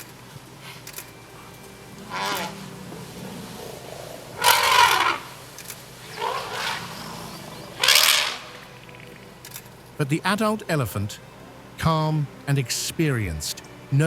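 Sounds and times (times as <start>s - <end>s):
elephant calling: 0.0s - 10.0s.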